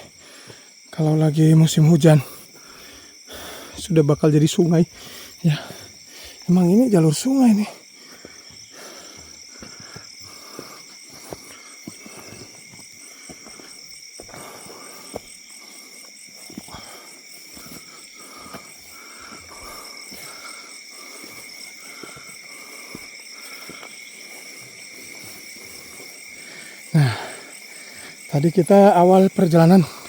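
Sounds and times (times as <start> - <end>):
crickets trilling: 0.0 - 30.0
footsteps on loose stones: 8.0 - 20.4.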